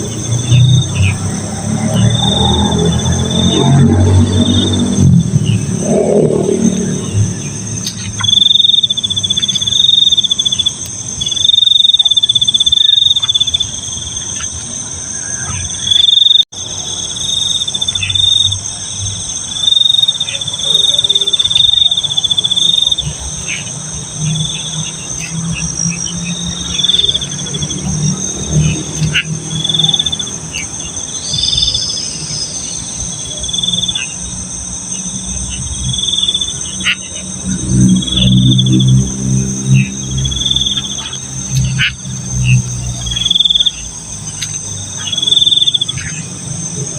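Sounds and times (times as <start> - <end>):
crickets trilling: 0.0 - 46.9.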